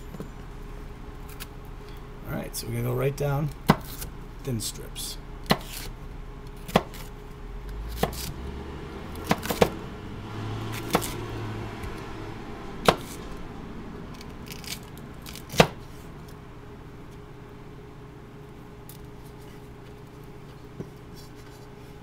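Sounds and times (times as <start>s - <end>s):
knife slicing pepper: 5.4s - 6.0s, 7.9s - 8.3s, 10.7s - 11.2s, 12.8s - 13.2s.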